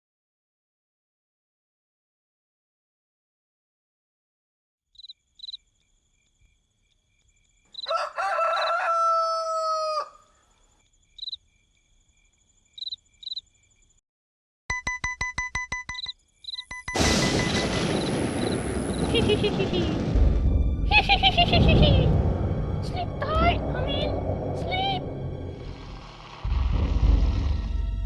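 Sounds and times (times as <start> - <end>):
cartoon rooster crowing: 7.8 - 10.3.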